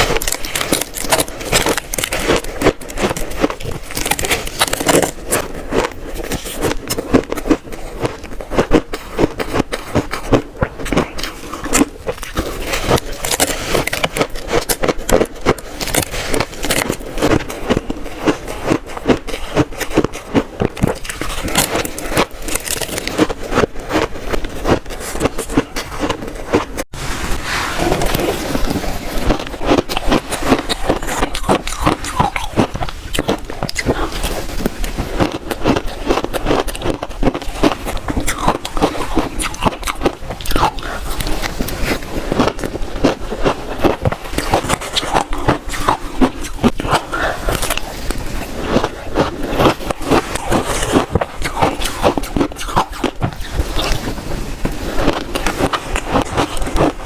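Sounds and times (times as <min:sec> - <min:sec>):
shaved ice crunching: 0:00.0 - 0:08.3, 0:27.0 - 0:57.0.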